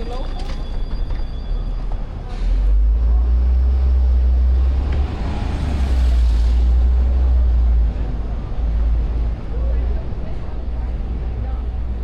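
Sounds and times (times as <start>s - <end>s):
traffic rumble: 0.0s - 12.0s
vehicle passing: 3.5s - 9.7s.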